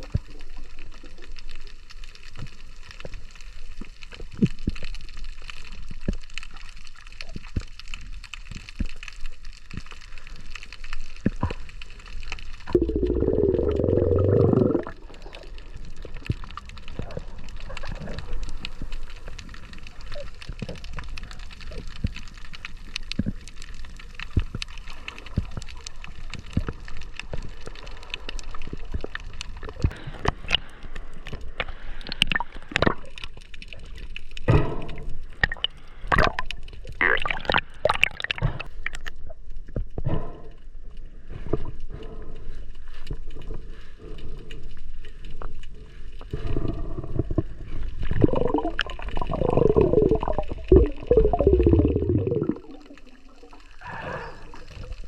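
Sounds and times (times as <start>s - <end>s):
water gurgling and bubbling: 12.7s - 15.5s, 35.4s - 39.2s, 46.4s - 55.0s.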